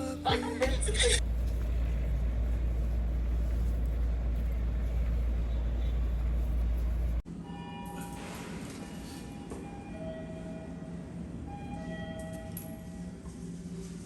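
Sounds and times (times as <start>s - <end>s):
low rumble with hiss: 0.6s - 7.2s.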